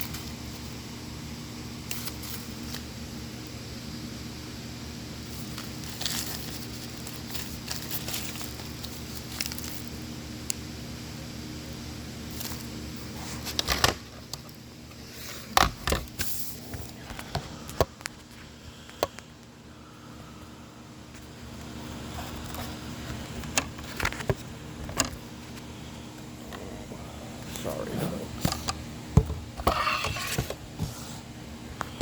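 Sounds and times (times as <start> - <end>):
plastic bag crinkling: 5.3 - 10.0.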